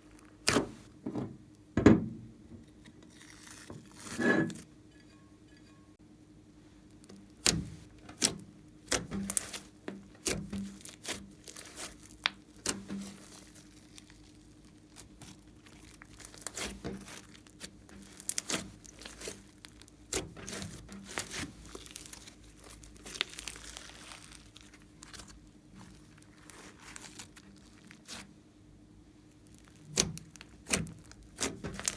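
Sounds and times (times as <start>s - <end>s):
faint steady hum: 0.0s - 31.9s
slime squished by hand: 7.2s - 28.3s, 29.3s - 31.9s.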